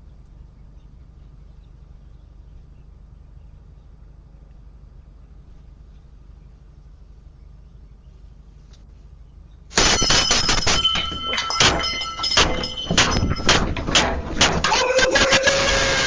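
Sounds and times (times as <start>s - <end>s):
low hum: 0.0s - 16.0s
shattering glass sounds: 9.7s - 15.5s
crashing and breaking: 9.7s - 16.0s.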